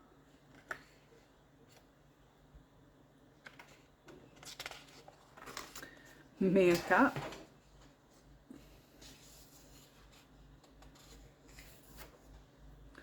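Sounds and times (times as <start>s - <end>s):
paper page rustling: 3.4s - 8.1s, 9.0s - 13.0s.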